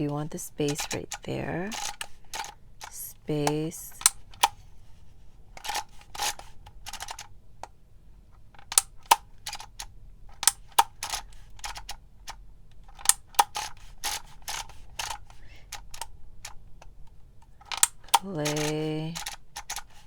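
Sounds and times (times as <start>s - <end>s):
label maker clicking: 17.6s - 20.0s.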